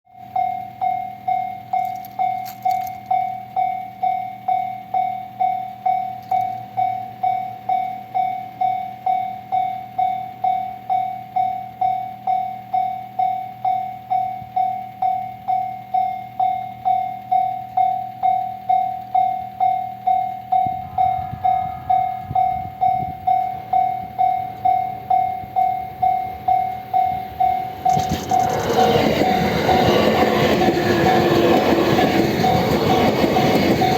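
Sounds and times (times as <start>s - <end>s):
electric train passing: 0.1s - 33.9s
level-crossing bell ringing: 0.1s - 33.9s.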